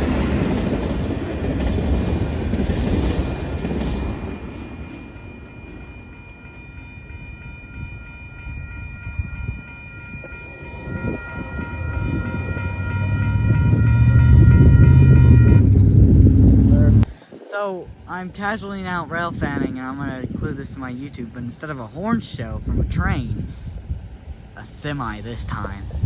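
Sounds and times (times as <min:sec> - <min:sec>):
large vehicle rumbling past: 0:11.2 - 0:17.1.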